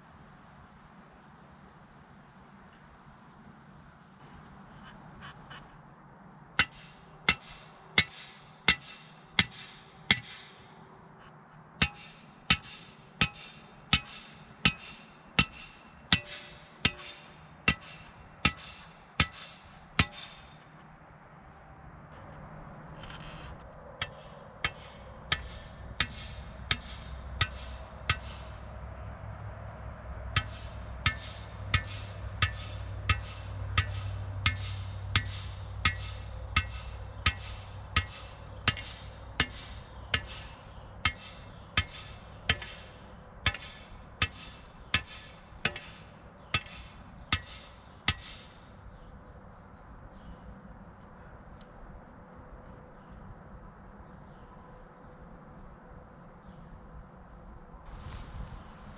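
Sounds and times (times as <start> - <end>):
crickets chirring: 0.0 - 58.9
hammer striking fence stake: 6.6 - 10.7, 11.8 - 20.7, 24.0 - 28.7, 30.3 - 48.7.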